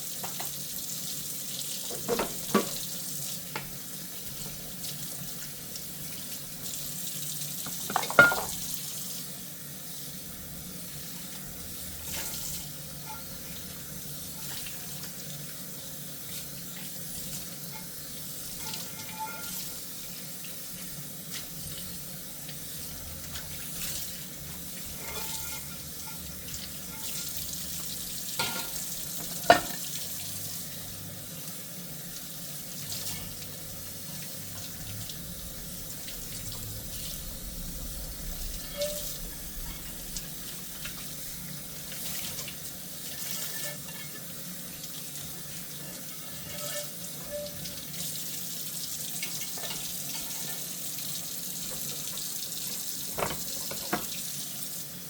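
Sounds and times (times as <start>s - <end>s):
tap running into sink: 1.8s - 2.9s, 7.6s - 8.7s, 28.4s - 29.9s, 53.0s - 54.2s
dishware clinking: 7.9s - 8.6s, 18.6s - 19.7s, 28.4s - 28.8s, 29.4s - 29.8s.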